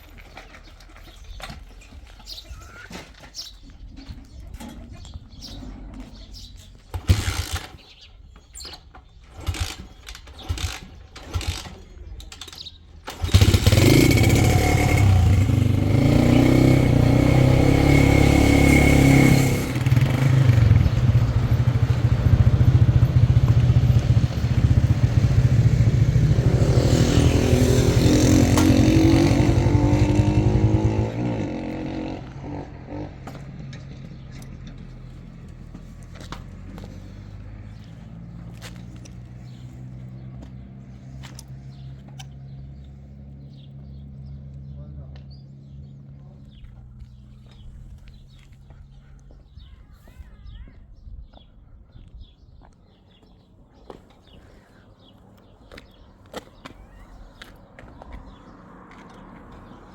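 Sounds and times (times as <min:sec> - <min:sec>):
small motorcycle engine revving: 0:06.9 - 0:08.0, 0:09.3 - 0:11.9, 0:12.6 - 0:34.3.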